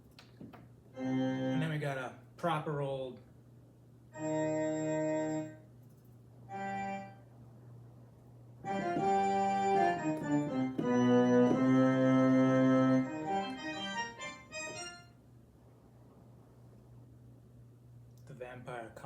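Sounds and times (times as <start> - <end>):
organ chords on digital piano: 0.9 - 2.1, 4.1 - 5.8, 6.5 - 7.4, 8.6 - 15.2.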